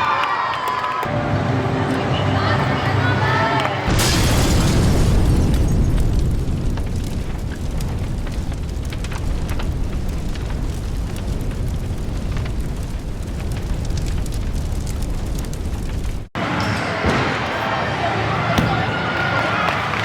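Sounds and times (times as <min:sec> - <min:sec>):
low rumble: 0:03.8 - 0:16.3.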